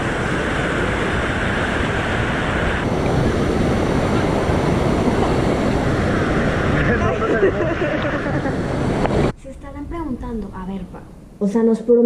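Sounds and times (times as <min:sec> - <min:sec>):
waterfall rushing: 0:00.0 - 0:09.3
wind noise on microphone: 0:00.0 - 0:11.4.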